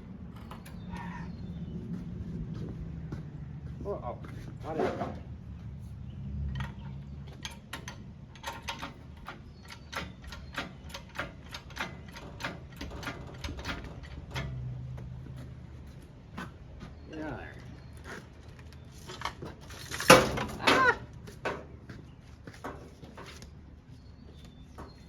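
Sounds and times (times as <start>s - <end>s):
sharp metallic clicks: 6.5s - 14.7s.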